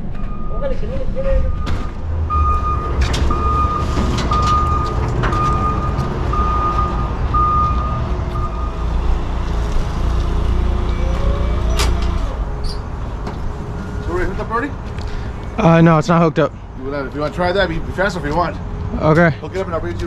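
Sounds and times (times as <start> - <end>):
heavy vehicle engine running: 0.0 - 15.9
backup alarm beeping: 0.1 - 9.2.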